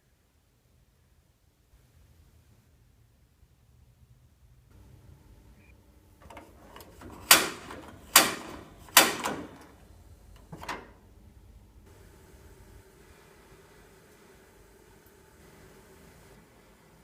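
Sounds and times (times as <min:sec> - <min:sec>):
faint steady hum: 0:00.0 - 0:17.0
heater control clicks: 0:06.2 - 0:11.0.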